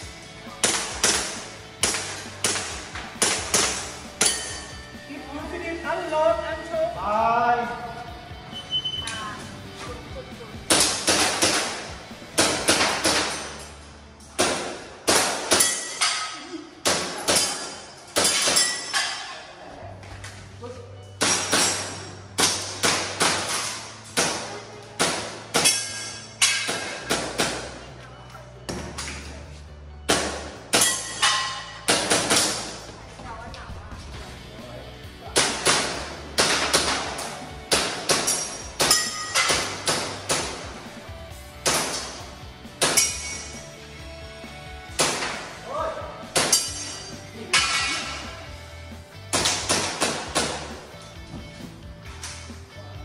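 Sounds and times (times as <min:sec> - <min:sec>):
pellets clanking on steel targets: 0:00.6 - 0:05.0, 0:10.6 - 0:19.4, 0:21.1 - 0:27.9, 0:30.1 - 0:32.9, 0:35.3 - 0:40.8, 0:41.6 - 0:43.7, 0:46.2 - 0:48.4, 0:49.2 - 0:50.8.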